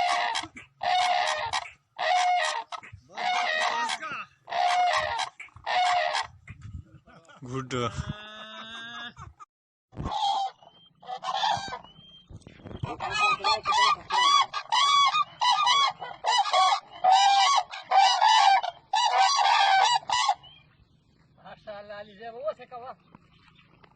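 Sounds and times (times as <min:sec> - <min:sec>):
cranes honking calls: 0:00.0 - 0:06.5, 0:10.1 - 0:11.8, 0:12.9 - 0:20.6.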